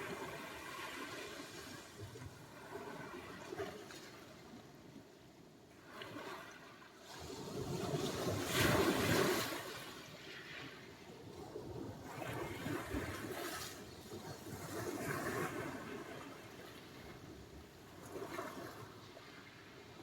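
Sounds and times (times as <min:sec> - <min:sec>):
waves breaking on shore: 0:05.8 - 0:10.9, 0:11.6 - 0:17.2.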